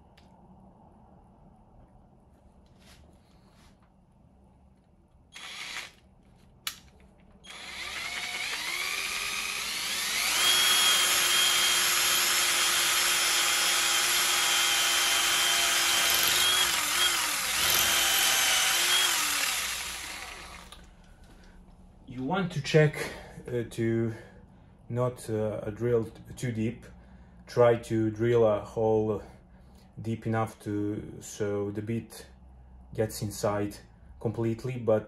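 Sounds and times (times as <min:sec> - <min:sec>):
power drill boring into brick: 0:05.4 - 0:06.0, 0:07.4 - 0:20.8.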